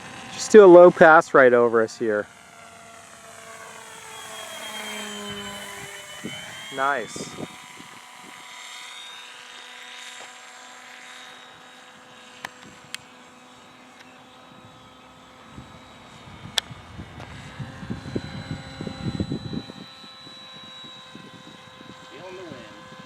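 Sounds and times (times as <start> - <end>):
model airplane motor whine: 0.0 - 23.0
wind buffeting microphone: 4.6 - 8.6, 15.4 - 23.0.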